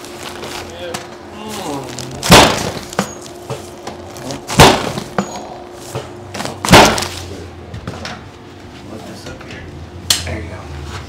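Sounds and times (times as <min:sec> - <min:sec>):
faint steady hum: 0:00.0 - 0:11.0
heavy thuds on treatment table: 0:04.5 - 0:05.4.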